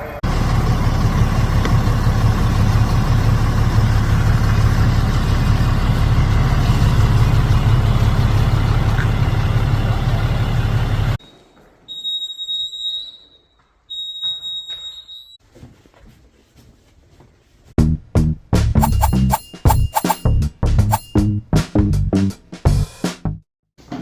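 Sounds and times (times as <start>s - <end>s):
engine idling rumble: 0.0s - 11.2s.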